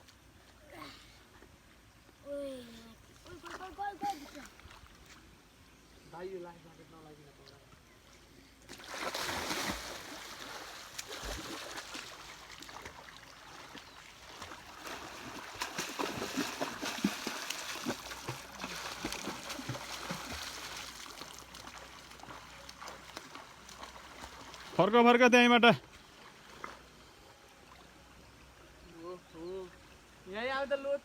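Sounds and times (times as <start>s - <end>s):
water splashing from swimming: 8.7s - 25.0s, 25.8s - 27.0s.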